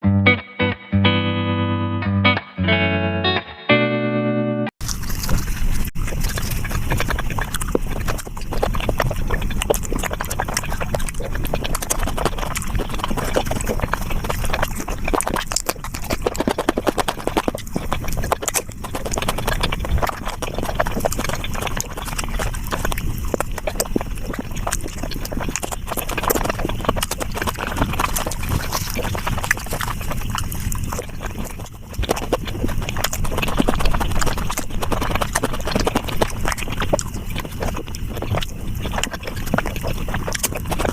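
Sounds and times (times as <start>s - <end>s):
sped-up chewing and smacking: 4.8s - 40.9s.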